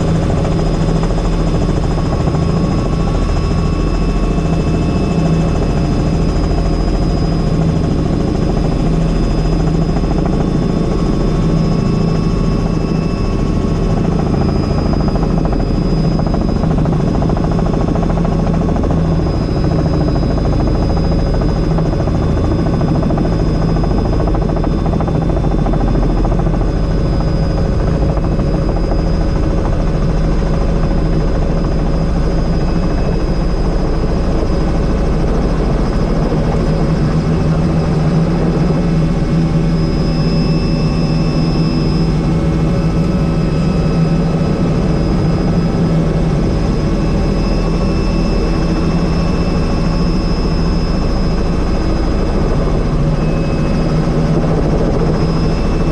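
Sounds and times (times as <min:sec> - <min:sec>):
helicopter engine and rotor: 0:00.0 - 0:55.9
thin high whine: 0:32.2 - 0:55.9.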